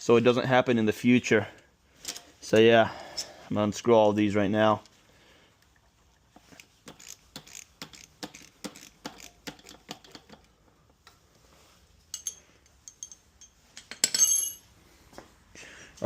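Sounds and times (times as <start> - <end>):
ratchet wrench clicking: 6.6 - 10.5.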